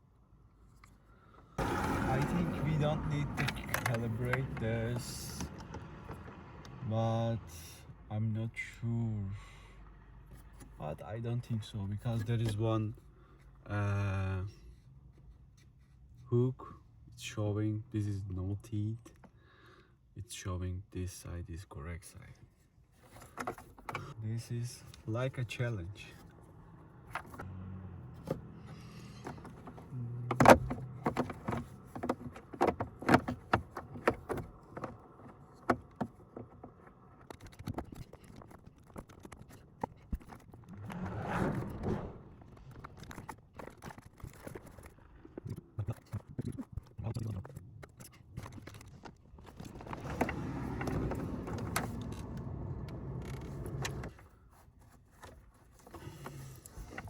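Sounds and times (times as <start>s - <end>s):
scraping: 28.1s - 45.6s
sharp plastic clicks and rattles: 28.7s - 40.7s.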